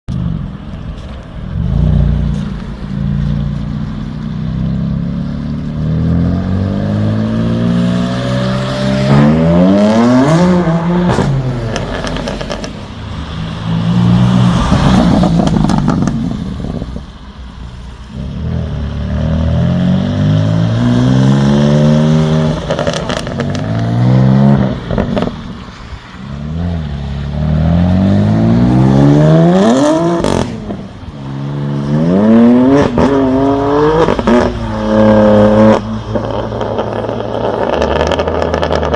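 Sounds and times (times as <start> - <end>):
car engine revving hard: 5.9 - 12.7, 18.6 - 25.3, 27.4 - 30.8, 31.5 - 38.9
exhaust pops and crackles: 15.3 - 16.9, 36.1 - 38.9.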